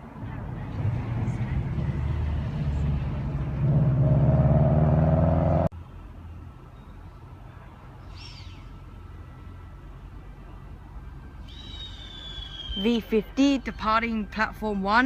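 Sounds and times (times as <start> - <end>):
bird chirp: 8.0 - 8.9, 11.4 - 13.9.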